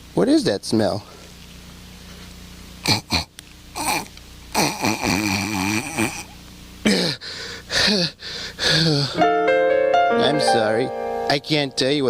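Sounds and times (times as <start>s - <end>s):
short voiced snorts: 2.8s - 7.2s
voiced snuffle through clogged nose: 2.8s - 7.2s.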